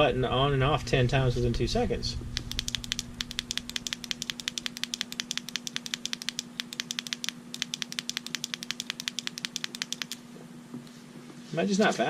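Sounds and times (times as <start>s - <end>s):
flashlight switch clicking: 2.4s - 10.2s.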